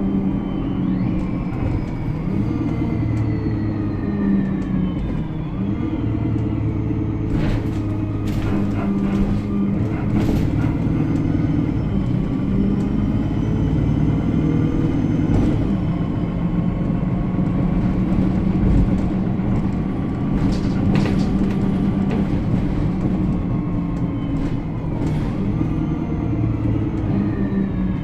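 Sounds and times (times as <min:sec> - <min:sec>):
faint high squeal: 0:00.0 - 0:15.2
bus engine running: 0:00.0 - 0:28.0
short rattles: 0:19.6 - 0:23.4.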